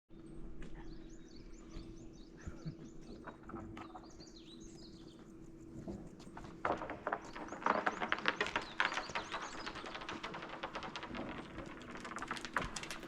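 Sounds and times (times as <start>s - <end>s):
small birds chirping: 0.1s - 11.4s
wind turbine crackling: 5.3s - 13.0s.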